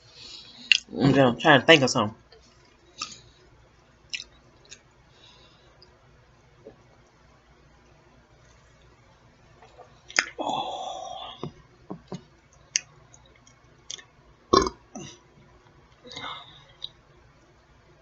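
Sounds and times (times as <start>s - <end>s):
mouth clicks and smacks: 0.6s - 0.9s, 4.1s - 4.9s, 9.6s - 10.4s, 11.4s - 14.7s
woman burping: 14.5s - 15.2s.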